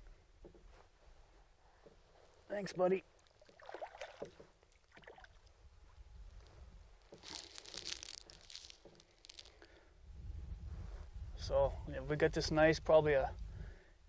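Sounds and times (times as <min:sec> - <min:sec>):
low wind rumble: 0:05.4 - 0:08.3, 0:09.4 - 0:14.0.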